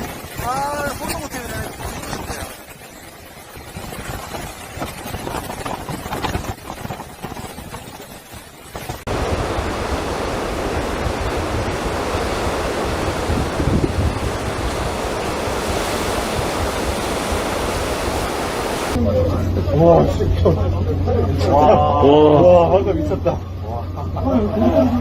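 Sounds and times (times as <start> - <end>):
rushing water: 0.0 - 19.0
wind buffeting microphone: 0.0 - 19.5
storm surf: 0.0 - 21.7
roaring wind: 0.0 - 25.0.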